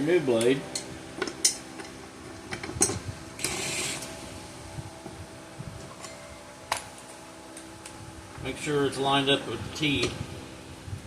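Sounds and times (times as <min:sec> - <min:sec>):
short metal scrape: 0:03.4 - 0:04.2.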